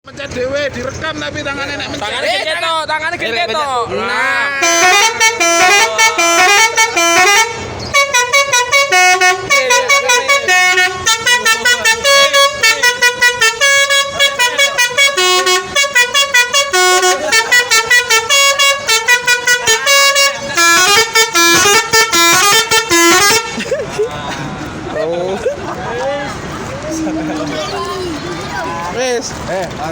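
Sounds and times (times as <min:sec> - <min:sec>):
musical bus horn melody: 0:04.5 - 0:23.7.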